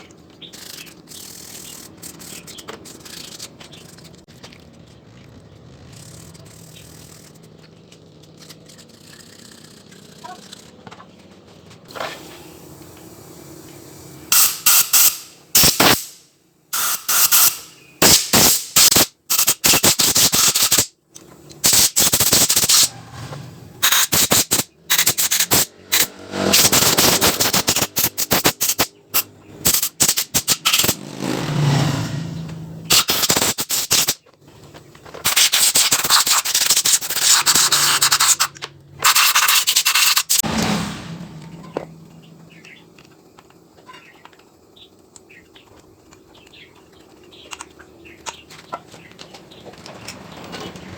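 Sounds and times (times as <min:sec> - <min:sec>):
hissing workshop tool bursts: 0:11.9 - 0:20.9, 0:21.6 - 0:22.9, 0:23.8 - 0:31.4, 0:32.9 - 0:34.2, 0:35.2 - 0:41.0.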